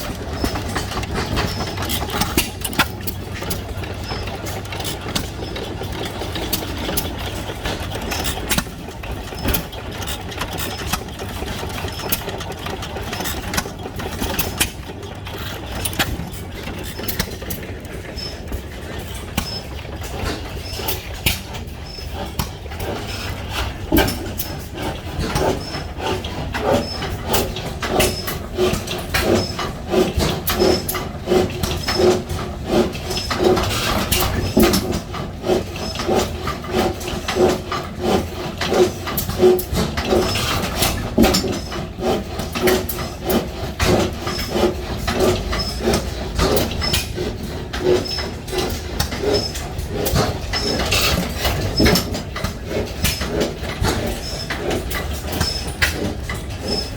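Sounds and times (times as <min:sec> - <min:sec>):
sharp exhaust pops: 0:00.0 - 0:56.9
stationary gas engines running: 0:00.0 - 0:56.9.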